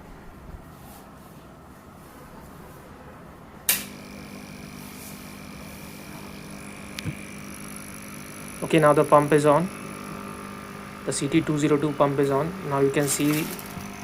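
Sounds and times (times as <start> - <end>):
air pump switch click: 3.7 - 4.2, 6.8 - 7.4
air pump humming: 3.7 - 14.0
aquarium powerhead hum: 3.7 - 14.0.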